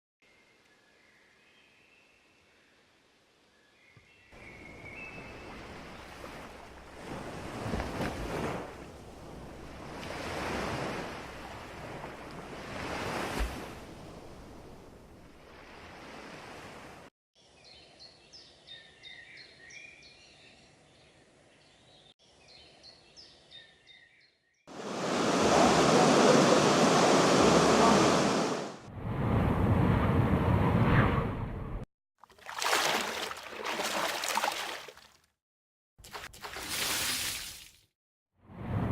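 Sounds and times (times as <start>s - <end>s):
birds chirping: 3.8s - 6.5s
ocean waves washing in: 4.6s - 17.1s, 24.7s - 31.8s, 38.4s - 38.9s.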